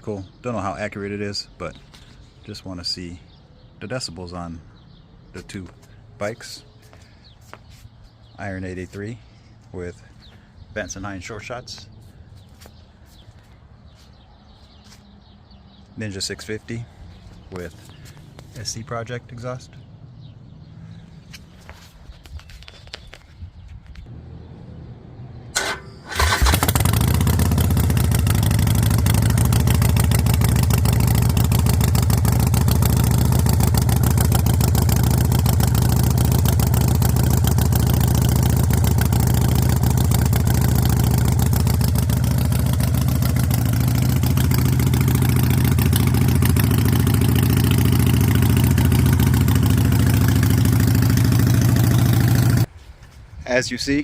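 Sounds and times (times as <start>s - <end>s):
motorcycle engine cranking: 25.6s - 52.7s
motorcycle engine idling: 25.6s - 52.7s.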